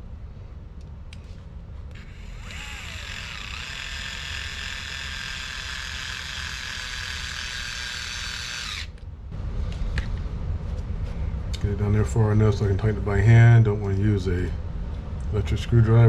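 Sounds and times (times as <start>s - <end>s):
small electric motor whining: 1.9s - 9.0s.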